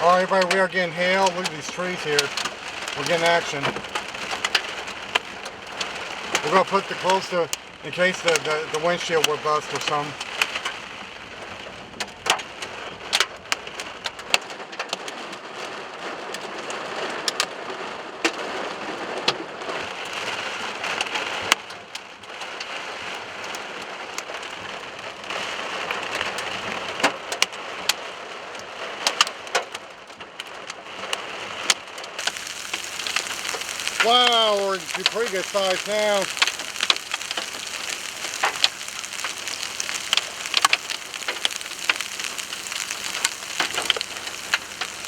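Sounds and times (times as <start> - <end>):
rain hissing on car: 0.0 - 45.0
hailstone impacts: 32.2 - 45.0.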